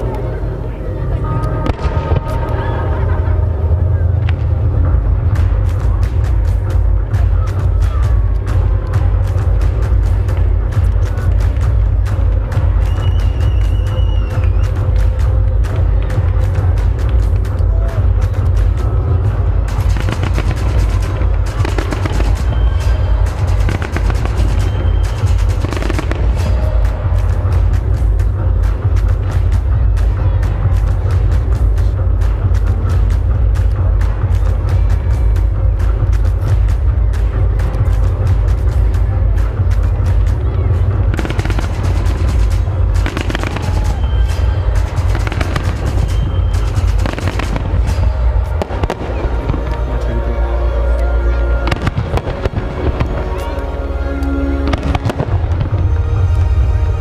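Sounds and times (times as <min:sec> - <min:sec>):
music playing: 0:00.0 - 0:57.0
fireworks deep booms: 0:01.6 - 0:02.6, 0:41.1 - 0:49.9, 0:51.6 - 0:53.2, 0:54.6 - 0:56.0
fireworks cracking: 0:18.3 - 0:28.0, 0:41.1 - 0:50.2, 0:51.6 - 0:53.6, 0:54.6 - 0:55.9.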